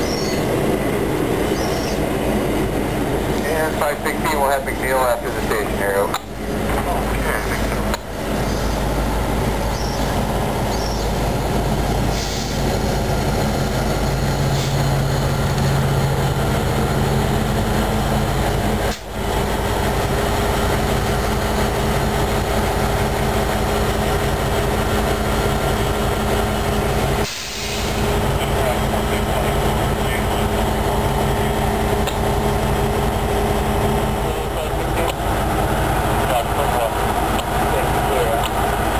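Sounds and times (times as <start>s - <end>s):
train passing rumble: 0.0s - 38.9s.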